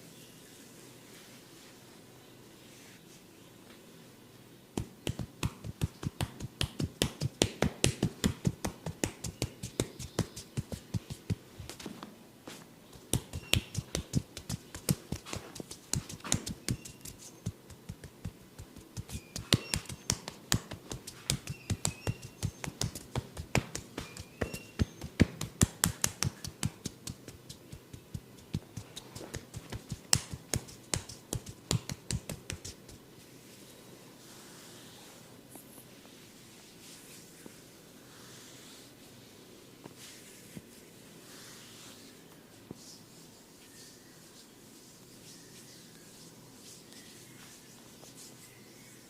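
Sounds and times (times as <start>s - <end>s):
hands slapping head: 4.8s - 11.9s, 13.0s - 32.9s.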